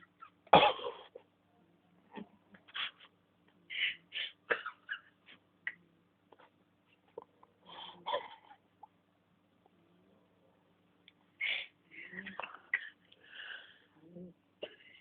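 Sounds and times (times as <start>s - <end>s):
cat snoring: 14.0s - 14.3s.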